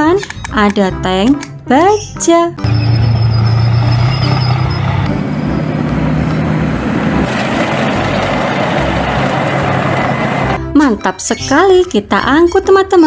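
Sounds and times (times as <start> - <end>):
tank engine drone: 2.6 - 10.6.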